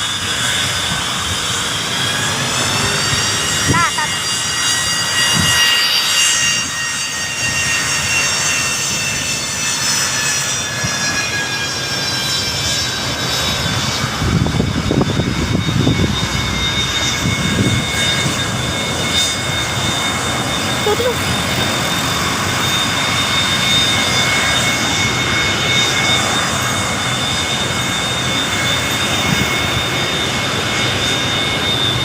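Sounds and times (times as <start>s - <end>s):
airplane turbine engine whine: 0.0s - 32.0s
low engine rumble: 13.7s - 20.0s.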